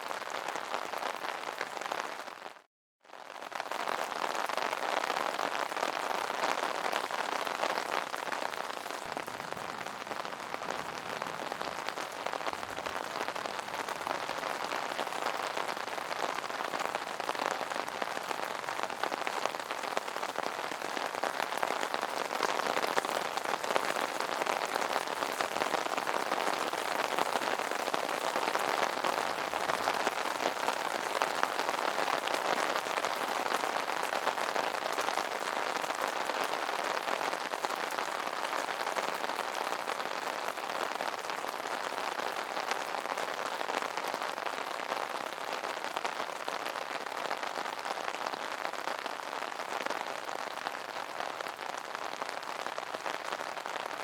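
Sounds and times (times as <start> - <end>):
rain on an umbrella: 0.0 - 54.0.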